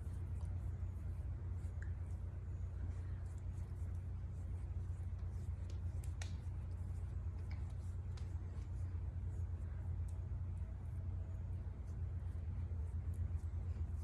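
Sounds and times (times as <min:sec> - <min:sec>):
fingers rubbing cream into skin: 0:00.0 - 0:14.0
steady low hum: 0:00.0 - 0:14.0
faint soft clicks: 0:05.2 - 0:08.7.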